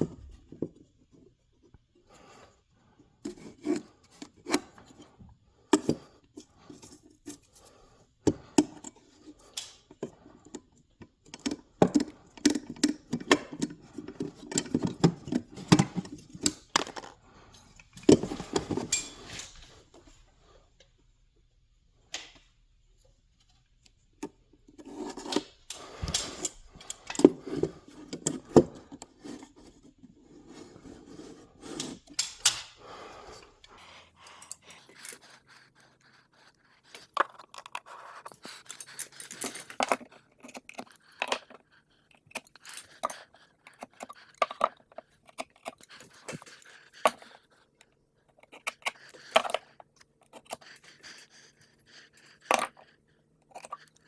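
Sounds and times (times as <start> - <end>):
tools knocking and scraping: 3.2 - 7.5, 8.2 - 20.2, 24.2 - 33.8
metallic clinks of hardware: 18.7 - 19.6.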